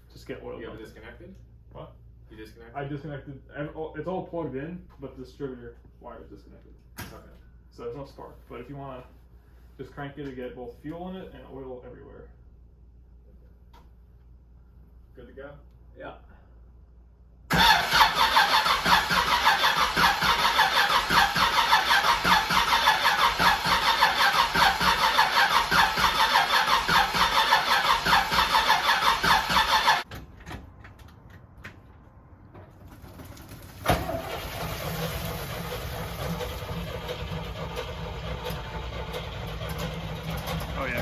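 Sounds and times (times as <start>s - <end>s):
starter motor cranking engine: 17.5s - 30.1s, 33.8s - 41.0s
engine running: 34.0s - 41.0s.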